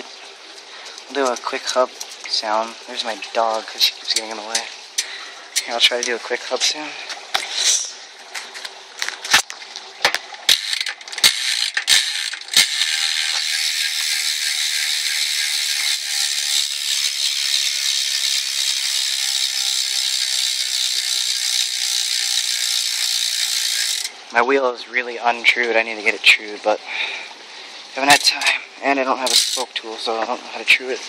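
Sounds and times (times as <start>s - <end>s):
wheel clicks and knocks: 10.0s - 24.1s, 29.3s - 29.6s
bike hub ratchet buzz: 10.5s - 24.2s, 29.2s - 29.6s.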